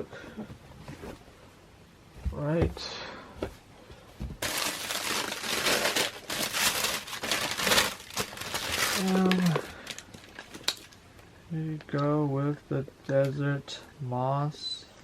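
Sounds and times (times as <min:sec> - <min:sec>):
packing paper crinkling: 0:04.4 - 0:11.0.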